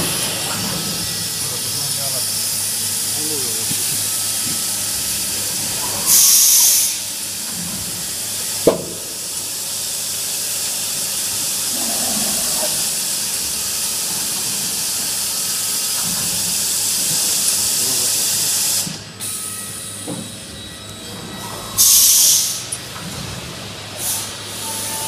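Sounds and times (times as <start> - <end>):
woodworking machine hissing: 0.0 - 7.4, 8.0 - 19.0, 21.7 - 22.8.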